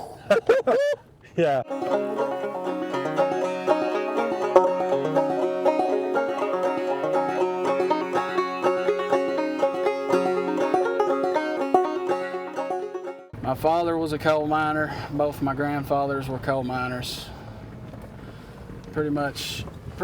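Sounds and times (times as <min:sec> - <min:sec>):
banjo playing bluegrass: 0:01.6 - 0:13.4.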